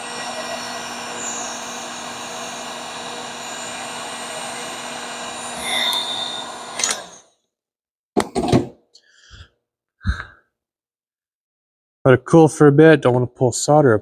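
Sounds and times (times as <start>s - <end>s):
heat gun blowing: 0.0s - 7.2s.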